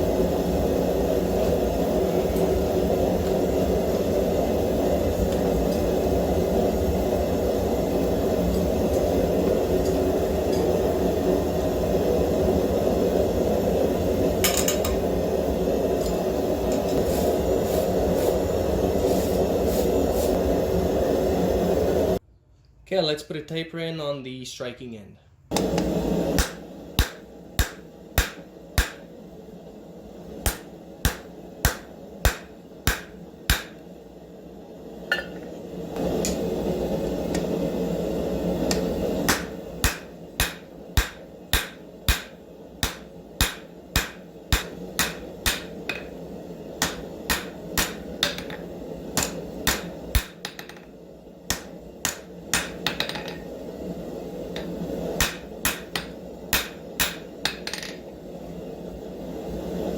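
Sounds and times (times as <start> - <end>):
hammer striking steel bar: 26.4 - 29.1, 30.5 - 33.8, 38.7 - 46.1, 46.8 - 48.6, 49.2 - 50.9, 51.5 - 53.4, 55.2 - 58.0.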